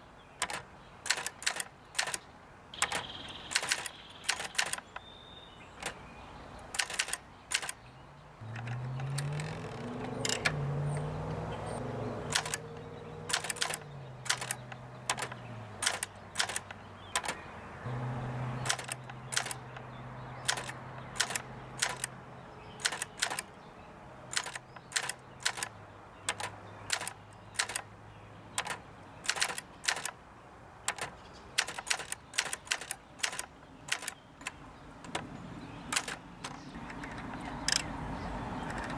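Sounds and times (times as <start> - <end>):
typewriter keystroke clacks: 0.4 - 2.2, 2.8 - 5.0, 6.6 - 7.8, 8.5 - 10.6, 12.2 - 17.4, 18.6 - 22.2, 22.8 - 23.6, 24.3 - 27.9, 28.6 - 30.2, 30.8 - 35.3, 35.9 - 37.9.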